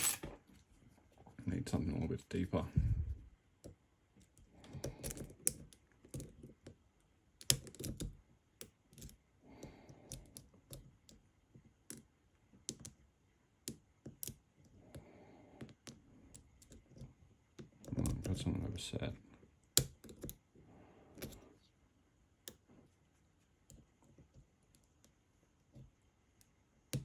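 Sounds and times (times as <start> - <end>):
lock pick clicking and scraping: 0.0 - 0.2.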